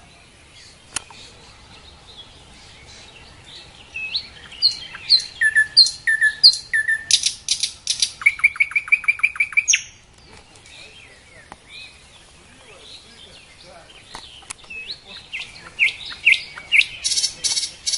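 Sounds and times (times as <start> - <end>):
nightingale singing: 0.0 - 17.9
sharp click: 0.9 - 1.2.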